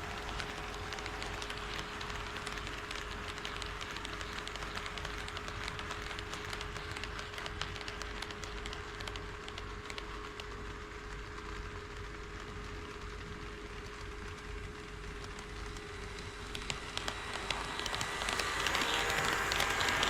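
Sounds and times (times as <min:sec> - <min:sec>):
model train wheels rattling: 0:00.0 - 0:10.5, 0:13.8 - 0:20.0
constant hum: 0:00.0 - 0:20.0.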